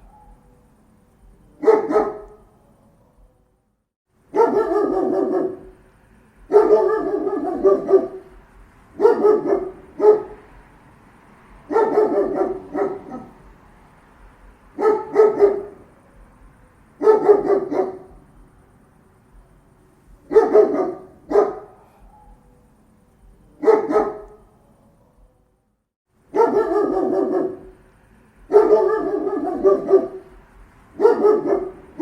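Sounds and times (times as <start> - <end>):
large dog barking deeply: 1.6 - 2.5, 4.3 - 5.8, 6.4 - 8.4, 9.0 - 10.5, 11.6 - 13.5, 14.7 - 15.9, 17.0 - 18.2, 20.2 - 22.5, 23.6 - 24.5, 26.3 - 27.8, 28.4 - 30.4, 31.0 - 32.0.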